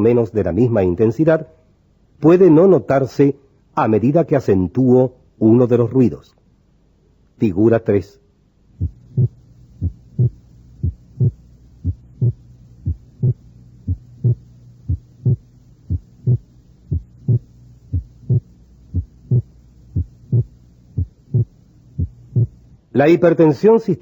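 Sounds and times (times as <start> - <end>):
faint steady hum: 0.0 - 24.0
simulated heartbeat: 8.8 - 22.7.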